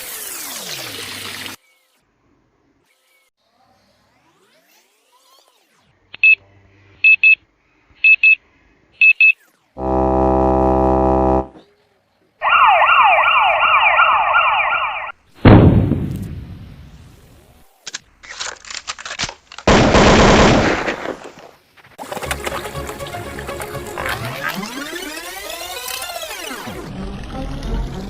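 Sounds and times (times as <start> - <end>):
low buzzer: 9.8 - 11.6
warbling alarm siren: 9.8 - 11.6, 12.4 - 15.2, 24.2 - 26.8
loud bang: 15.4 - 16.8.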